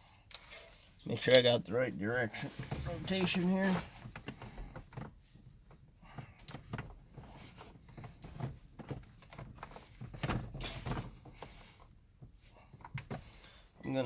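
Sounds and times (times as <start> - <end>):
clatter of knocks: 6.5 - 11.4.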